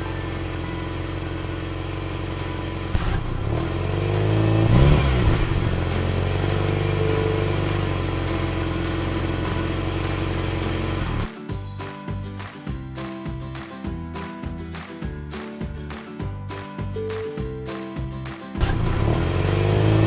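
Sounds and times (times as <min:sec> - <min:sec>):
car engine running and revving: 0:00.0 - 0:11.3, 0:18.2 - 0:20.0.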